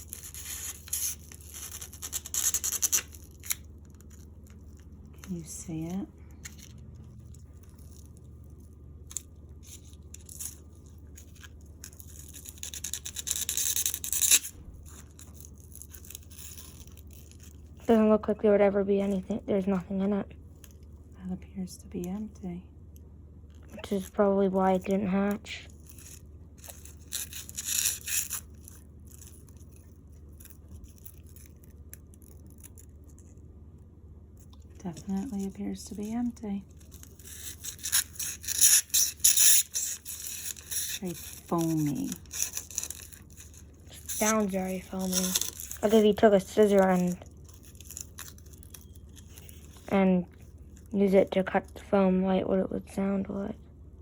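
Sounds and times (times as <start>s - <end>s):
scissors scraping: 0.0s - 4.2s, 9.1s - 17.5s, 36.8s - 50.0s.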